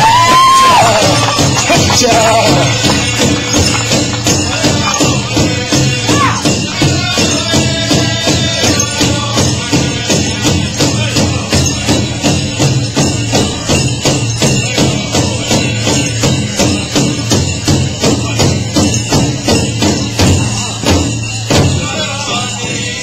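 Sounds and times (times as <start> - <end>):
big drum beating steadily: 0.0 - 23.0
jingling: 0.2 - 23.0.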